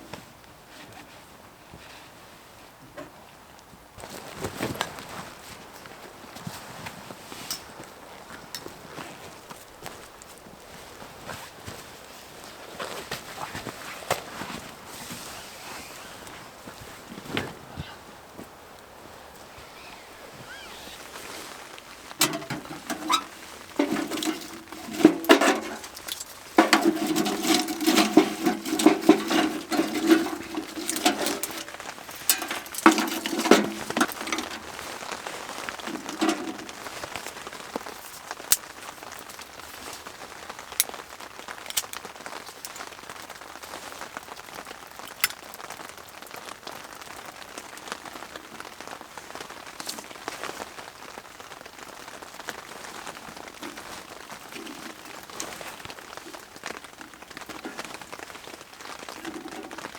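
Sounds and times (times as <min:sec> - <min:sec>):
light rain patter: 0:00.0 - 0:59.9
raindrops ticking on a tent: 0:00.0 - 0:59.9
camp gear clinking and knocking: 0:04.0 - 0:10.4, 0:12.7 - 0:40.0, 0:40.7 - 0:42.9, 0:45.0 - 0:45.6, 0:52.8 - 0:59.9.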